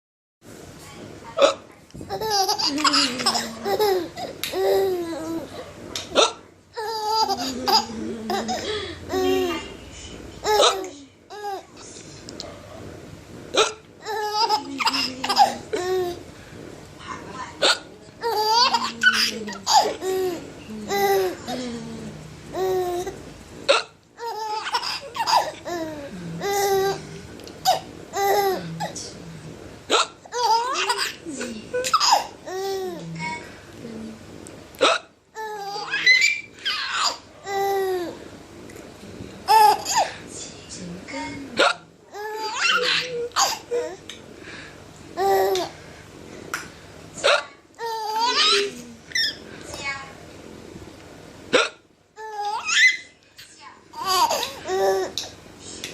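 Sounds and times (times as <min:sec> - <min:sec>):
baby laughing and giggling: 0:02.1 - 0:05.5, 0:06.8 - 0:09.6, 0:10.4 - 0:11.7, 0:13.6 - 0:16.2, 0:18.2 - 0:21.6, 0:22.5 - 0:23.1, 0:23.7 - 0:27.0, 0:27.6 - 0:28.6, 0:30.3 - 0:33.0, 0:35.4 - 0:38.2, 0:42.1 - 0:44.0, 0:47.8 - 0:49.4, 0:54.0 - 0:55.3
man hiccuping: 0:34.8 - 0:35.1, 0:51.6 - 0:51.8.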